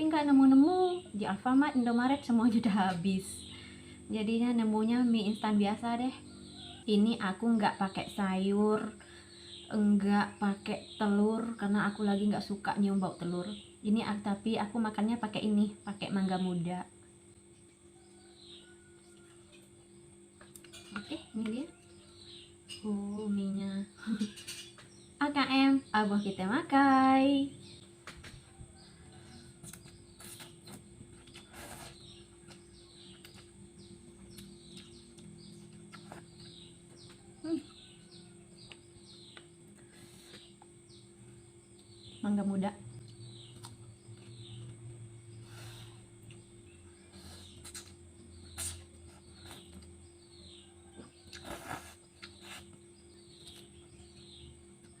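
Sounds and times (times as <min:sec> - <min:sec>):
birds chirping: 0:00.0 - 0:55.0
steady low hum: 0:00.0 - 0:55.0
mouth clicks while eating: 0:34.2 - 0:37.2, 0:47.2 - 0:50.0, 0:51.0 - 0:52.8.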